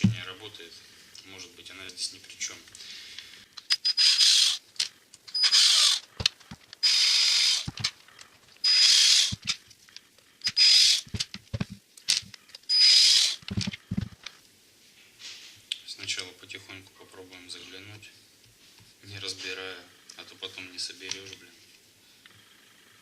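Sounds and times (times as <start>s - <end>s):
cordless drill whining: 3.7s - 4.6s, 5.3s - 6.2s, 6.8s - 7.8s, 8.6s - 9.5s, 10.4s - 11.2s, 12.7s - 13.5s.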